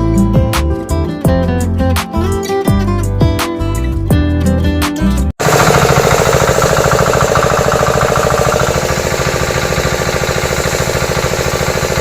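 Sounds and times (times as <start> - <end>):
pressure washer pump running: 5.4 - 12.0.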